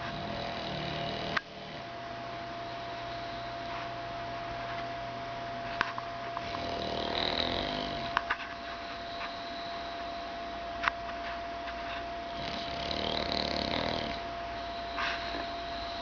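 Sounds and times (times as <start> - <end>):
dog snoring: 0.0 - 1.9, 6.4 - 8.2, 12.3 - 14.3.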